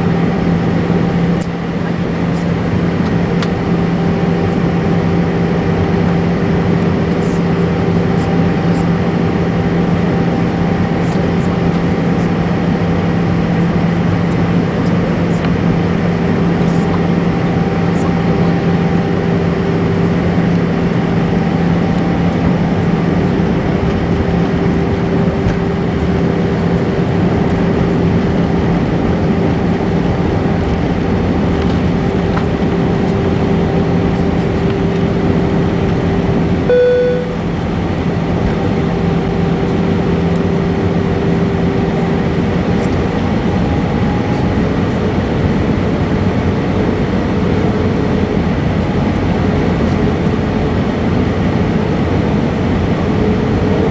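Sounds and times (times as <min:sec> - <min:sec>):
constant hum: 0:00.0 - 0:53.9
short beep: 0:36.7 - 0:37.6.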